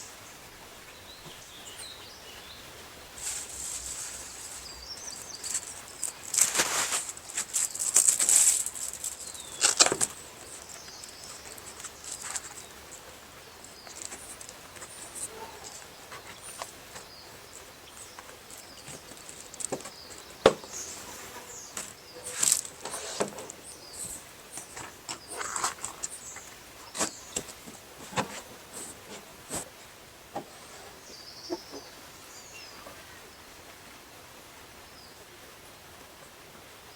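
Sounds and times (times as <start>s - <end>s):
rustles and clicks of handling: 3.2s - 30.7s.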